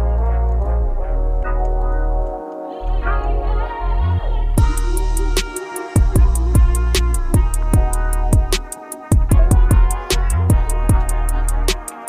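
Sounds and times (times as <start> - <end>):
sustained synth tones: 0.0 - 8.6
kick drum: 4.6 - 11.3
fast hi-hat ticks: 4.6 - 12.0.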